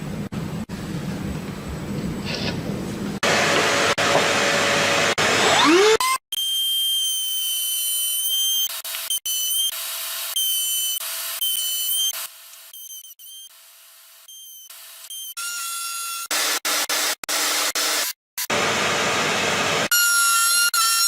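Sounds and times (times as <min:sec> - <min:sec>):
wood router high whine: 0:03.2 - 0:16.6, 0:18.5 - 0:21.0.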